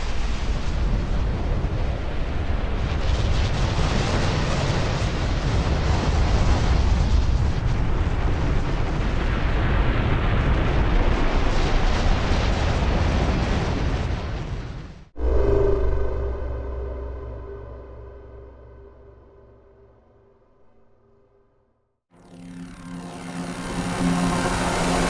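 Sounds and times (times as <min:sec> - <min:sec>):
loud dense rumble: 0:15.1 - 0:21.5
synthesized tone: 0:15.2 - 0:25.0.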